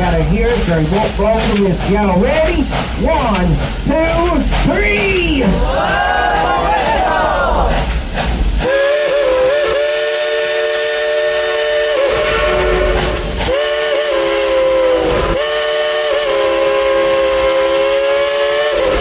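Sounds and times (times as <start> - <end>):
steam locomotive whistle blasts: 8.6 - 19.0.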